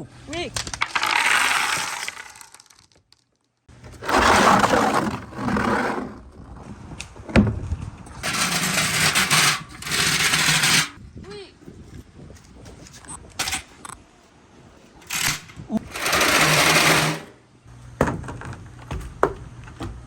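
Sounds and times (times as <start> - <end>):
marbles rolling and clattering: 0.5 - 6.3, 8.2 - 11.0, 15.1 - 17.3.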